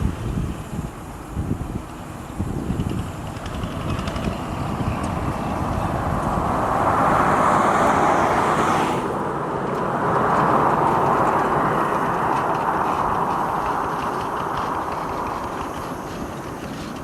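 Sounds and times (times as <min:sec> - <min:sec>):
vehicle rushing hiss: 0:00.0 - 0:17.0.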